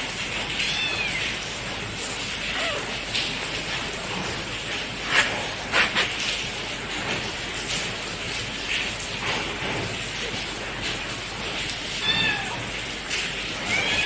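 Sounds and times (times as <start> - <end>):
kitten mewing: 0.6 - 1.4, 2.4 - 3.2, 12.0 - 12.7, 13.6 - 14.0.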